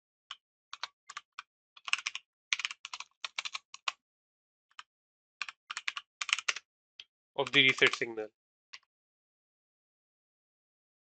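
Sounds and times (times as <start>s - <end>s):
typing on a computer keyboard: 0.8s - 4.0s, 4.7s - 6.6s, 7.4s - 8.1s.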